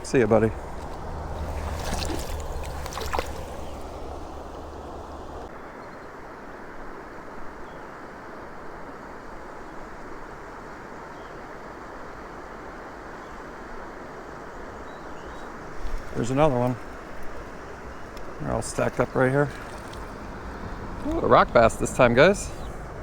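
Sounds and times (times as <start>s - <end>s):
creek water running: 0.0s - 5.6s, 12.5s - 23.0s.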